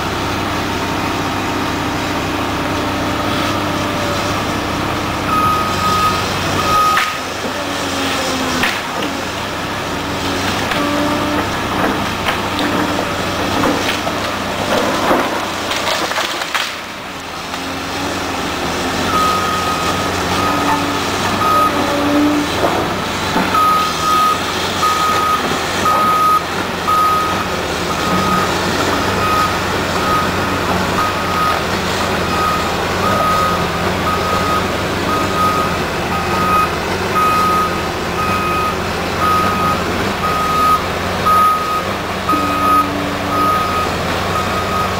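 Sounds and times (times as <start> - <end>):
excavator running under load: 0.0 - 44.9
travel alarm beeping: 5.3 - 7.0, 23.6 - 28.5, 32.3 - 44.9
sharp cracks: 15.1 - 17.0.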